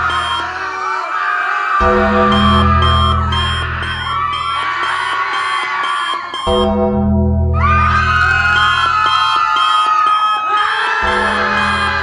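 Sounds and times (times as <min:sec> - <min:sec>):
music: 0:00.0 - 0:00.5, 0:01.8 - 0:12.0
electronic alarm tones: 0:00.0 - 0:00.6, 0:01.8 - 0:12.0
crowd noise: 0:00.0 - 0:12.0.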